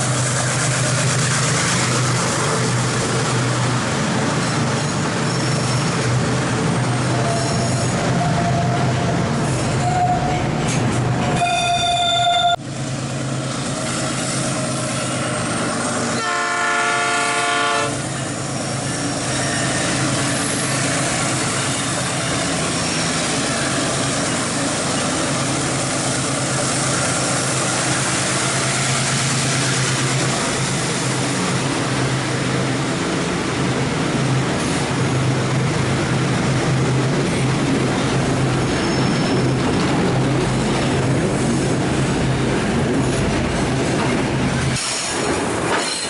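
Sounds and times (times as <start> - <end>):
diesel locomotive engine drone: 0.0 - 46.0
train running on rails: 0.0 - 46.0
locomotive horn: 16.1 - 18.0.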